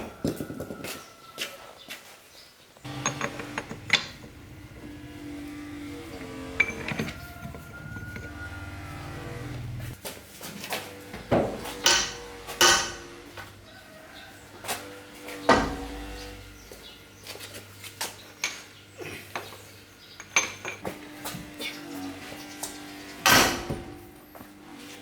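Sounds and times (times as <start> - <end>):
metal ringing: 2.9 - 9.9
metal tools clanking: 2.9 - 10.0, 18.0 - 20.9.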